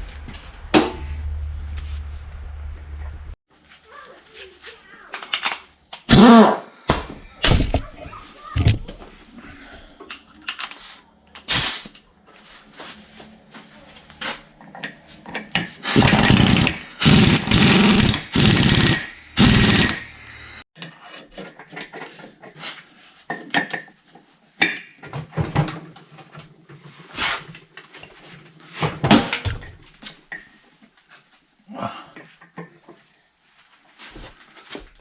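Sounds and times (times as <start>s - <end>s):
parts and tools clicking and knocking: 5.1s - 6.3s, 10.0s - 10.8s, 14.6s - 20.1s
handheld power tool running: 6.0s - 7.8s, 15.8s - 20.6s.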